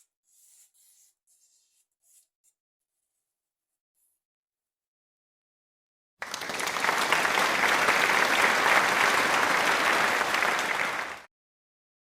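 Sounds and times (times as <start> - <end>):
dense clapping applause: 6.2 - 11.3.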